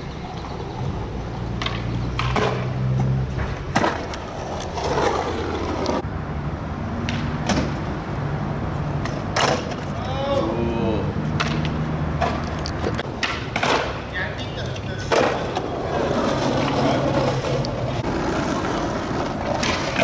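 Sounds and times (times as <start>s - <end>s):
skateboard wheels rolling on pavement: 0.0s - 20.0s
skateboard clacks: 1.4s - 6.0s, 9.0s - 10.2s, 11.4s - 20.0s.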